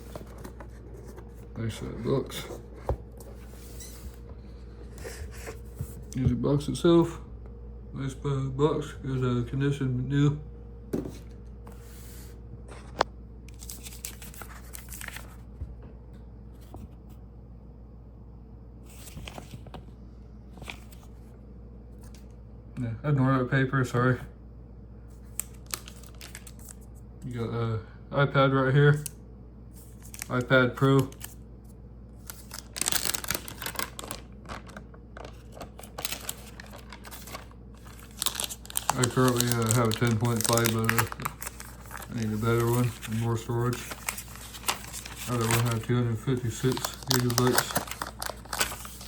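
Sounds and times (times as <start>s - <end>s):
cardboard and paper rustling: 0.0s - 6.3s, 11.0s - 15.7s, 18.9s - 19.9s, 20.5s - 21.3s, 25.2s - 26.9s, 32.2s - 49.0s.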